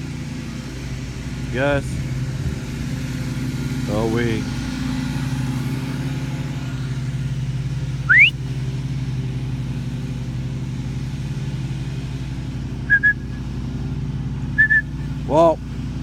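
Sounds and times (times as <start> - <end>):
lawn mower engine running: 0.0 - 16.0
rising whistle: 8.1 - 8.4, 12.9 - 13.4, 14.6 - 15.0
short whistle pips: 8.1 - 8.4, 12.9 - 13.4, 14.6 - 15.0.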